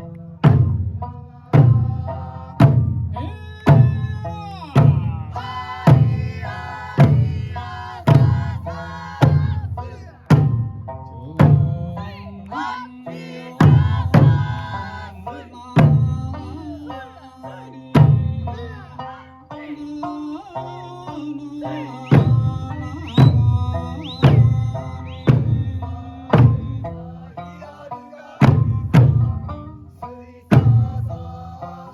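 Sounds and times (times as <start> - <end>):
taiko drums beating: 0.4 - 12.0, 13.6 - 15.2, 15.8 - 17.0, 17.9 - 18.7, 21.7 - 27.6, 28.4 - 29.9, 30.5 - 31.2
singing: 1.0 - 10.4, 11.1 - 31.9.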